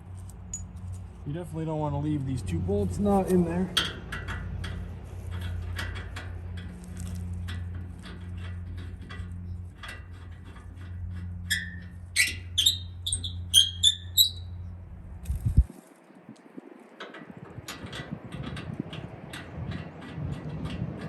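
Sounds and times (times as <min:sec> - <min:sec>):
short high squeaks: 0:10.6 - 0:14.8.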